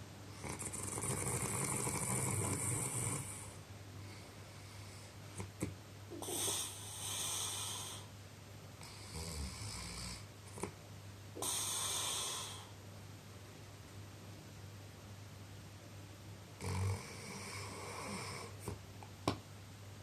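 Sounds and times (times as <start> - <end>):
quiet breathing: 0.3 - 8.2, 8.8 - 12.8, 16.6 - 18.8
person snoring: 0.4 - 3.5, 11.4 - 12.8.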